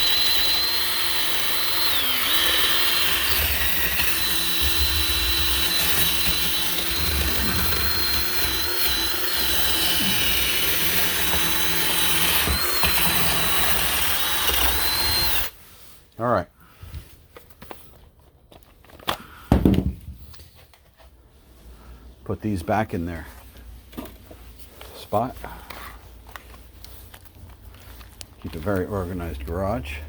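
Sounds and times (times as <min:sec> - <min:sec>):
power tool grinding wood: 0:00.0 - 0:15.6.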